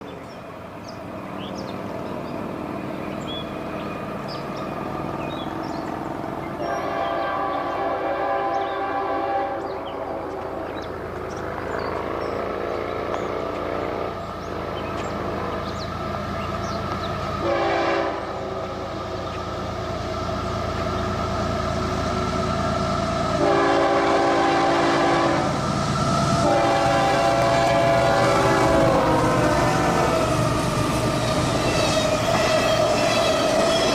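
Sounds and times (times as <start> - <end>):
locomotive engines running: 0.0 - 33.9
rumble of train cars: 0.0 - 33.9
locomotive air horn blasts: 6.6 - 10.8, 17.4 - 18.8, 23.3 - 25.7, 26.3 - 30.0.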